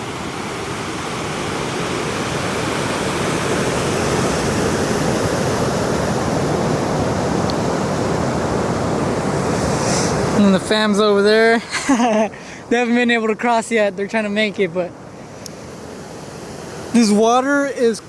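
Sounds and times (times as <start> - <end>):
water rushing over rocks: 0.0 - 11.8, 16.0 - 18.0.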